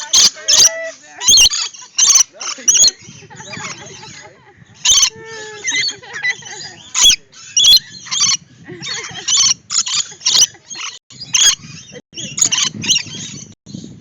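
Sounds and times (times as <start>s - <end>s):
birds screeching: 0.0s - 13.6s.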